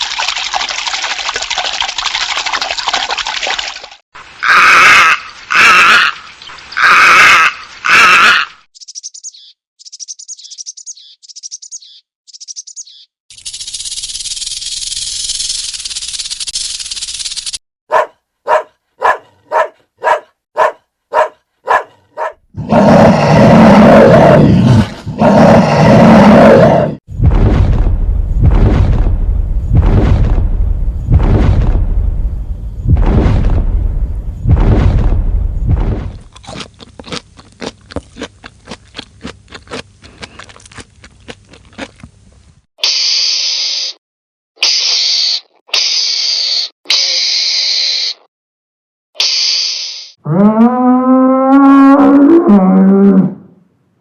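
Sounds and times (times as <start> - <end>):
animal hissing: 42.8 - 44.0, 44.6 - 48.3, 49.2 - 50.2.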